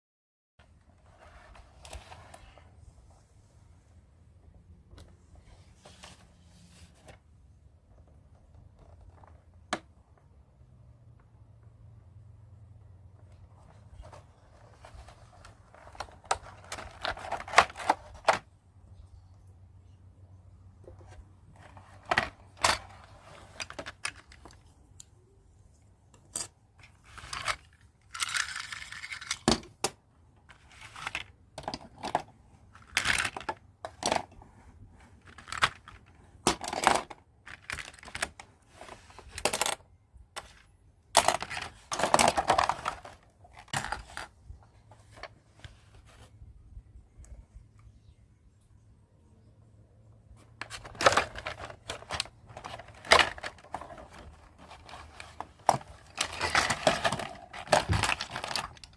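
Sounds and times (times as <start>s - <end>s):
rustling: 13.1s - 18.5s, 50.3s - 58.9s
plastic toy pieces clicking: 28.1s - 29.5s.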